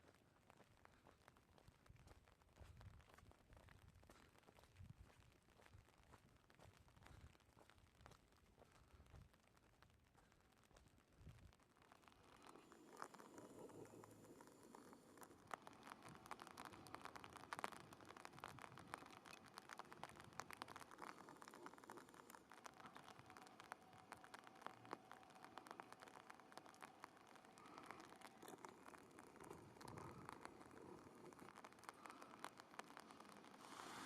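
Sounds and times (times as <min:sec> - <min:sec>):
faint clicks and crackles: 0:00.0 - 0:34.0.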